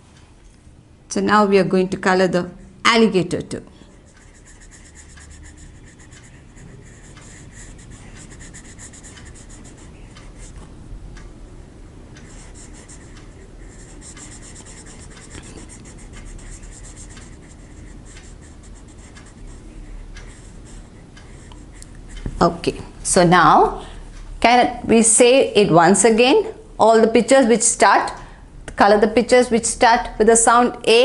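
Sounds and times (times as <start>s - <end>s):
colouring tool scribbling on paper: 4.1s - 10.6s, 12.2s - 22.3s.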